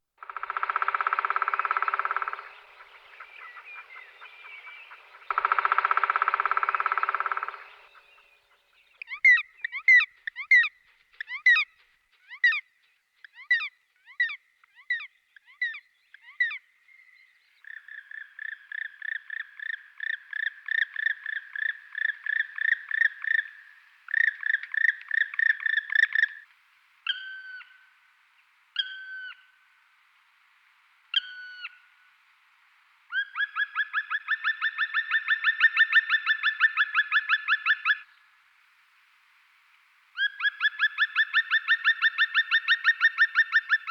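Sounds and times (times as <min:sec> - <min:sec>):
woodpecker drumming: 0:00.2 - 0:08.3
woodpecker calls: 0:00.2 - 0:12.6, 0:17.6 - 0:27.8, 0:33.1 - 0:38.2, 0:40.2 - 0:43.9.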